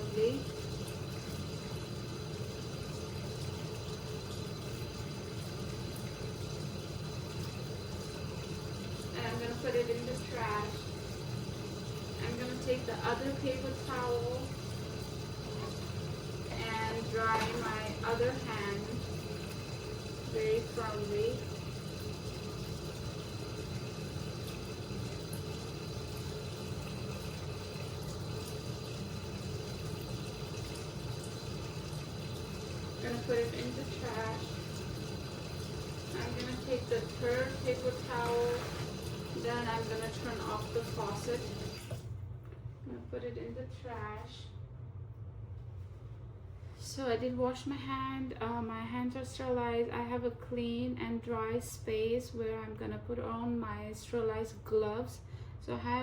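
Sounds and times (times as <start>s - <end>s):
tap water running into sink: 0.0s - 42.1s.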